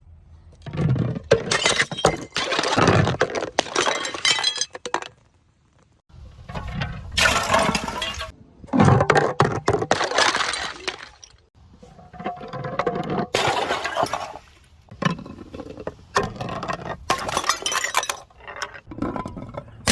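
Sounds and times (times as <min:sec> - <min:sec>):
glass bottles shattering: 0:00.8 - 0:05.2, 0:07.2 - 0:08.3, 0:09.6 - 0:11.5, 0:13.1 - 0:14.4, 0:16.6 - 0:18.9.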